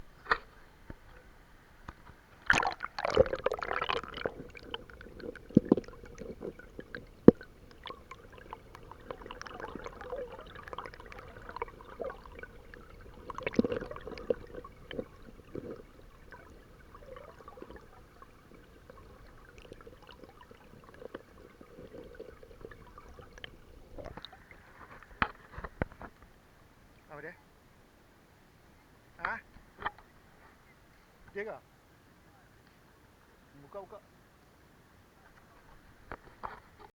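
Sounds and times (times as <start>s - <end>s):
underwater bubbling: 0.0s - 26.2s.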